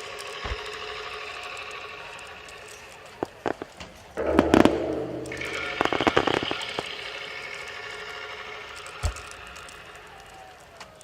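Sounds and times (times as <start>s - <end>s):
firework crackling: 0.0s - 11.0s
firework cracks: 0.0s - 11.0s
deep firework boom: 4.2s - 7.8s.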